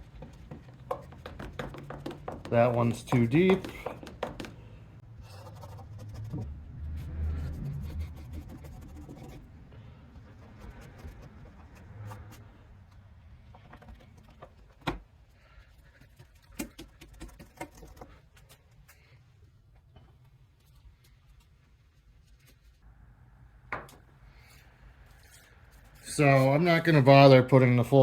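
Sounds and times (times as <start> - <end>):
cloth rubbing on painted panel: 5.2 - 12.6
low rumble: 5.8 - 8.8.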